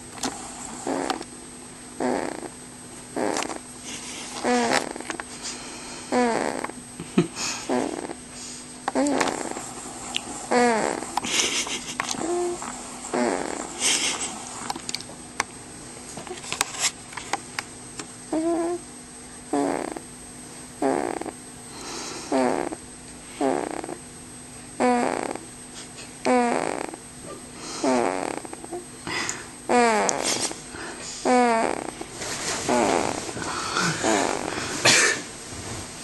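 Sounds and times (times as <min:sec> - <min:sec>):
squeaky snoring: 0:00.3 - 0:01.2, 0:02.0 - 0:03.6, 0:04.3 - 0:05.1, 0:06.1 - 0:06.8, 0:07.6 - 0:08.2, 0:08.9 - 0:11.2, 0:12.2 - 0:14.7, 0:18.3 - 0:18.8, 0:19.5 - 0:20.0, 0:20.8 - 0:21.4, 0:22.2 - 0:22.8, 0:23.4 - 0:24.0, 0:24.8 - 0:25.4, 0:26.2 - 0:27.0, 0:27.8 - 0:28.8, 0:29.7 - 0:30.5, 0:31.2 - 0:32.0, 0:32.6 - 0:34.5
rustling: 0:31.9 - 0:33.4.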